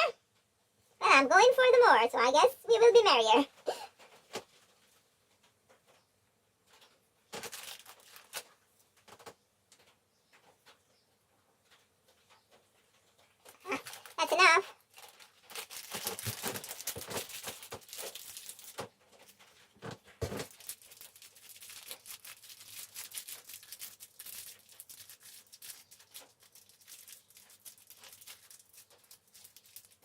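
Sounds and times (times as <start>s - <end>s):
plastic bag crinkling: 6.7s - 9.9s, 13.0s - 30.0s.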